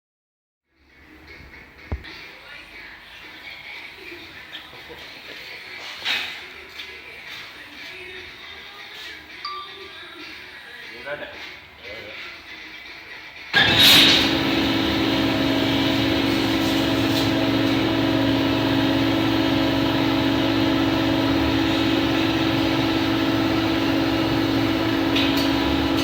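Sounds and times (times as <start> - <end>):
metal lathe running: 13.6 - 26.0.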